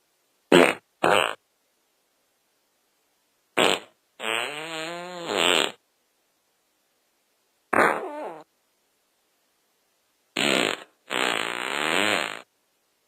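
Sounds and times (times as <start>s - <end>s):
fart sounds: 0.5s - 1.4s, 3.6s - 5.8s, 7.7s - 8.5s, 10.4s - 12.5s.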